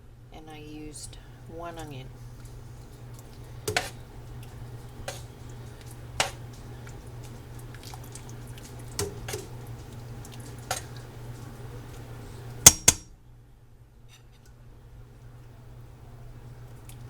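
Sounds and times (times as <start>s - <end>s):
metal spoon clinking against pot: 12.7s - 13.1s.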